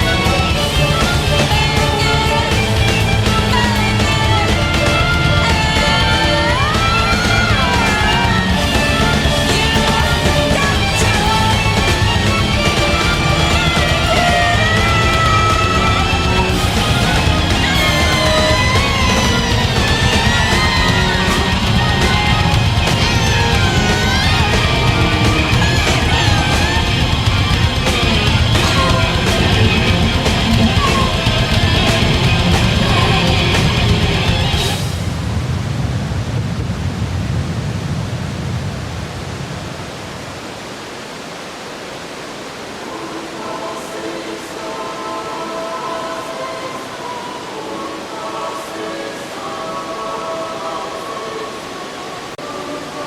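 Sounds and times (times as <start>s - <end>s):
rock music with distorted guitar: 0.0s - 34.8s
waterfall rushing: 0.0s - 53.0s.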